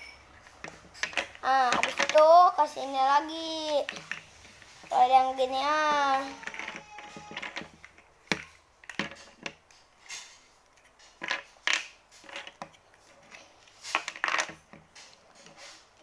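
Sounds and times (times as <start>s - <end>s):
rustling of small pieces: 0.4s - 16.0s.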